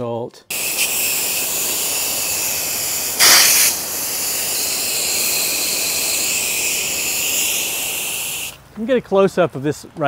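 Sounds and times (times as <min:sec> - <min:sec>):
pressure washer spraying: 0:00.5 - 0:08.6.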